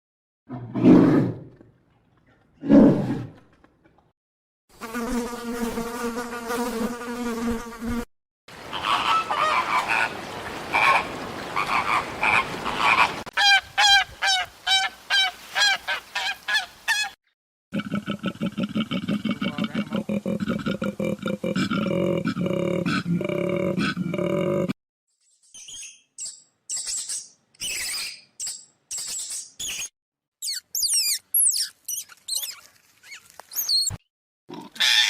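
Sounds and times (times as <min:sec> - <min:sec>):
insect buzzing: 0:04.7 - 0:08.1.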